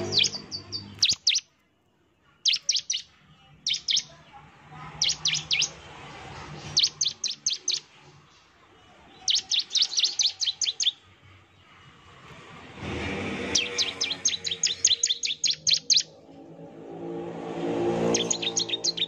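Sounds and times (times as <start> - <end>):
bird calling in sharp high notes: 0.0 - 1.5, 2.3 - 4.2, 5.0 - 5.8, 6.7 - 7.9, 9.2 - 11.0, 13.5 - 16.2, 18.1 - 19.0.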